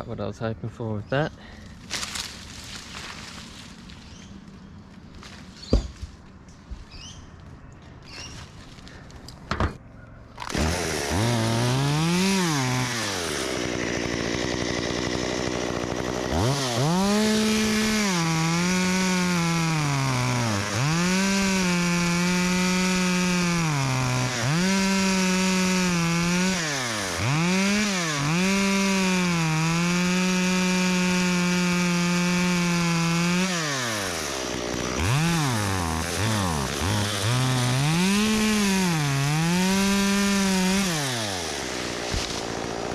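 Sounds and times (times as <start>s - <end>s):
chainsaw cutting wood: 10.4s - 42.9s.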